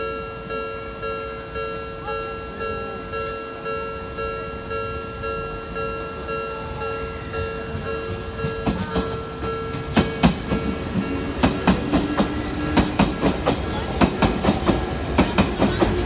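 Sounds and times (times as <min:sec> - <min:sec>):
level-crossing warning bell: 0:00.0 - 0:16.0
train wheels clacking over rail joints: 0:07.7 - 0:16.0.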